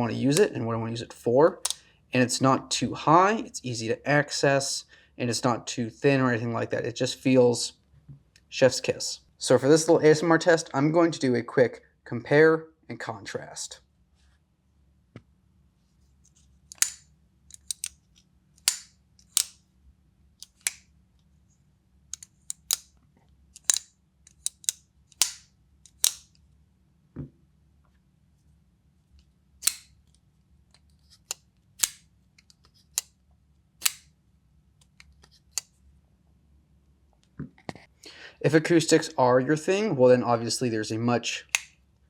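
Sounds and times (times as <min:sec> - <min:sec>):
folding knives clicking open and shut: 0:16.7 - 0:18.0, 0:18.6 - 0:19.6, 0:20.4 - 0:20.9, 0:22.1 - 0:23.0, 0:23.6 - 0:26.4, 0:29.6 - 0:30.0, 0:31.1 - 0:33.1, 0:33.8 - 0:34.1, 0:34.8 - 0:35.7.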